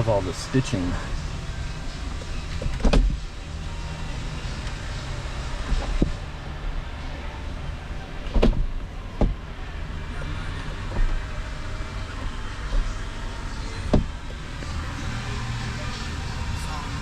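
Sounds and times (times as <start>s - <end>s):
steady low rumble: 14.6s - 17.0s.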